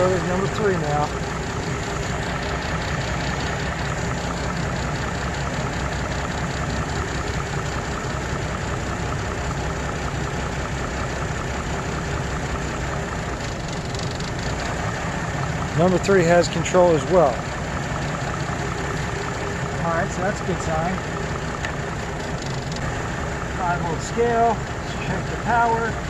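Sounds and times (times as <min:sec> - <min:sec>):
car engine idling with misfire: 0:00.0 - 0:26.0.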